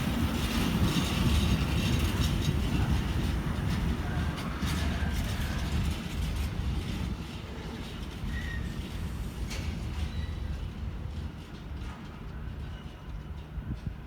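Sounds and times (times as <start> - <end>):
train rumbling past: 0.0 - 14.0.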